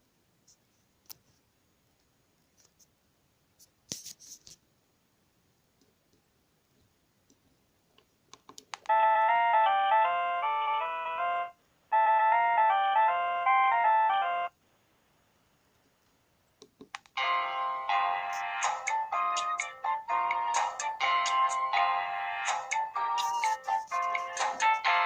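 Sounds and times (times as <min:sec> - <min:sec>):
mobile phone ringtone melody: 0:08.9 - 0:14.6, 0:17.2 - 0:25.0.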